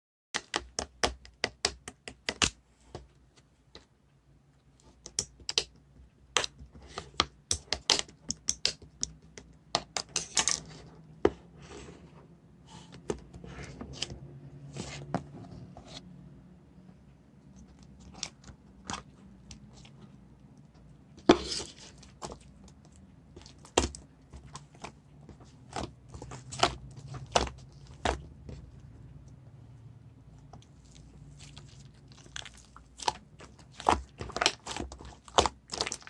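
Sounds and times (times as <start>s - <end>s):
slime squishing: 17.4s - 29.6s, 30.3s - 36.0s.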